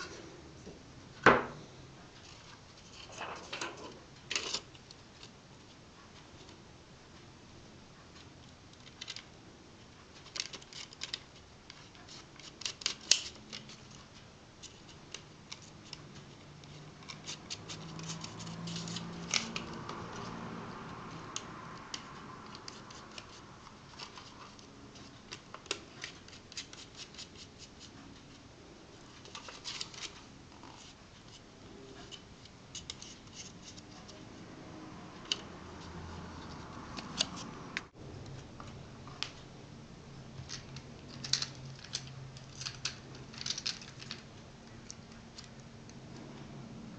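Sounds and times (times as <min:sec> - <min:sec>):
small tools clicking and scraping: 0:02.2 - 0:05.4, 0:10.2 - 0:27.9, 0:29.2 - 0:34.2, 0:40.4 - 0:45.6.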